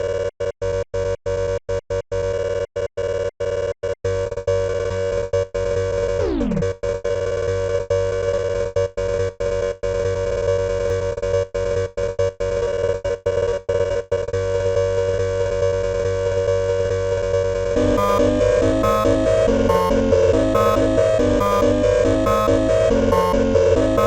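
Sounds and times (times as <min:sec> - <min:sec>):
distorted emergency alarm tone: 0:06.2 - 0:06.7, 0:17.8 - 0:24.0
tone sweeping down in pitch: 0:06.2 - 0:06.7, 0:17.8 - 0:24.0.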